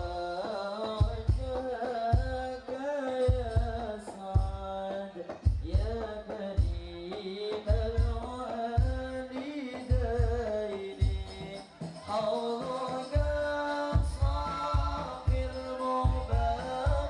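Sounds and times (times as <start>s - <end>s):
deep drum beat: 0.0s - 17.0s
group devotional singing: 10.9s - 17.0s.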